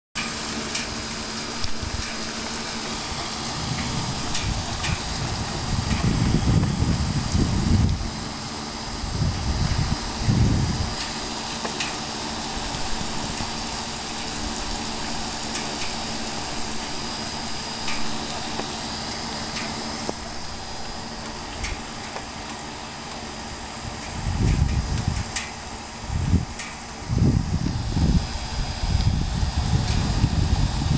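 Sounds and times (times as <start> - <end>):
sharp drips: 0.2 - 26.9
constant low hum: 0.2 - 30.9
steady hiss of rain: 0.2 - 30.9
distant thunder rumble: 3.2 - 8.2.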